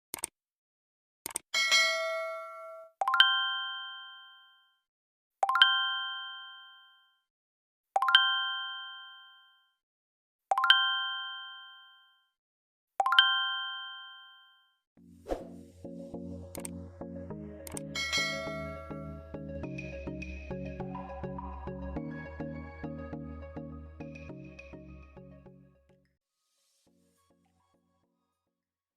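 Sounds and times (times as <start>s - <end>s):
metallic ding: 18.0s - 18.9s
glittery chime: 18.0s - 19.3s.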